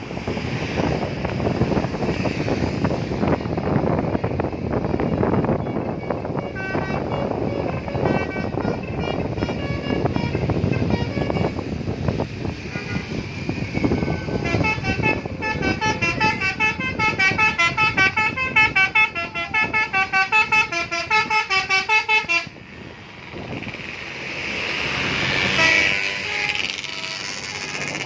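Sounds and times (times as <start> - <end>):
multi-tone bus horn melody: 3.5 - 22.7, 25.2 - 28.0.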